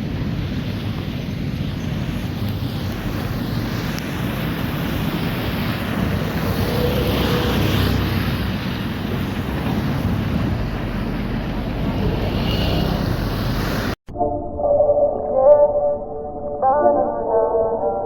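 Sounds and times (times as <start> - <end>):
steady rushing hiss: 0.0 - 14.0
wind buffeting microphone: 0.0 - 14.0.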